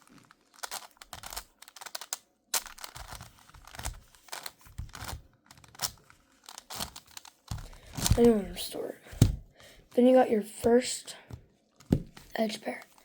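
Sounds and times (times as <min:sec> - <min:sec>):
puzzle cube layers clicking: 0:00.4 - 0:08.6.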